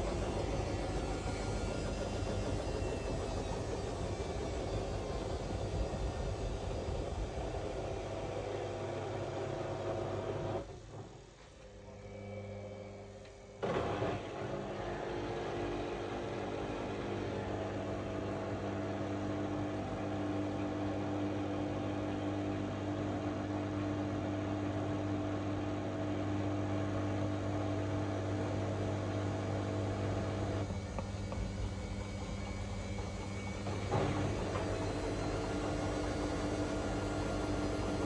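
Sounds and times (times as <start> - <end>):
washing machine humming: 0.0 - 38.0.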